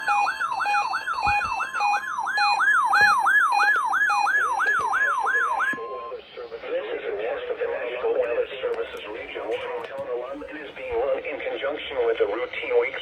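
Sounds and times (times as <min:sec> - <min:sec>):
electronic siren sweeping upward: 0:00.0 - 0:05.8.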